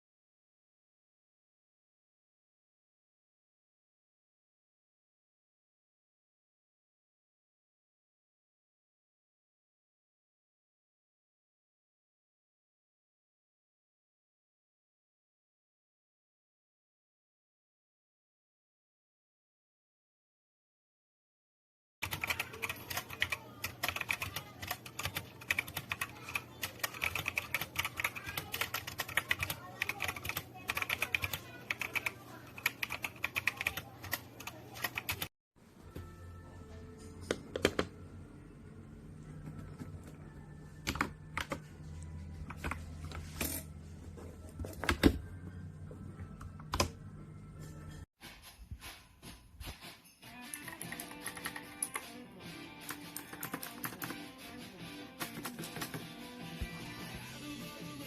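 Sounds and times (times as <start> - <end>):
mechanical keyboard typing: 22.0 - 35.3, 50.5 - 52.1, 52.8 - 54.2, 55.2 - 56.1.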